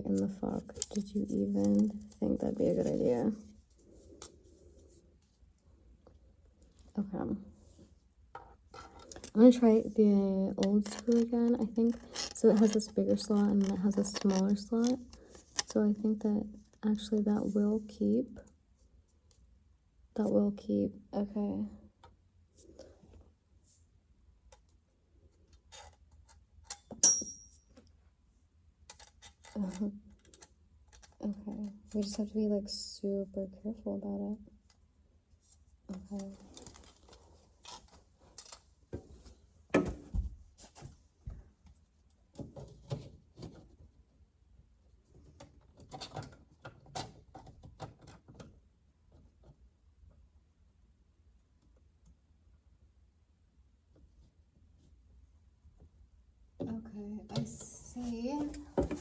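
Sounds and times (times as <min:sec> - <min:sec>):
sharp metallic clink: 0:27.0 - 0:27.6.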